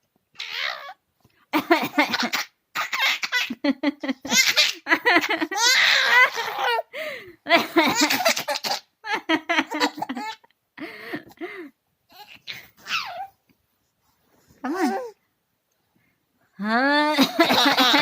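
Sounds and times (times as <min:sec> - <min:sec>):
baby laughing: 0:00.4 - 0:01.0, 0:01.6 - 0:06.9, 0:07.6 - 0:10.5, 0:12.1 - 0:13.3, 0:17.1 - 0:18.0.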